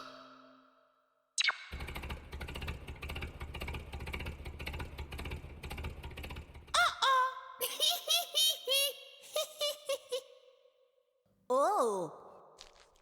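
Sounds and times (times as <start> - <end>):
engine running with fast rattle: 1.7 - 6.8.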